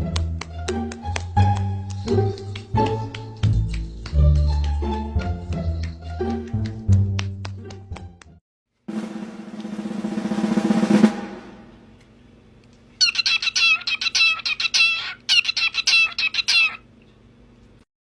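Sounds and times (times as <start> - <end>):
high bird-like chirping calls: 13.0 - 16.8.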